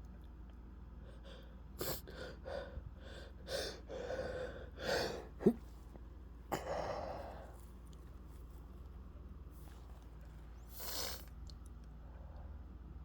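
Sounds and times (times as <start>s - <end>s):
person sneezing: 4.9s - 5.7s, 6.5s - 7.3s.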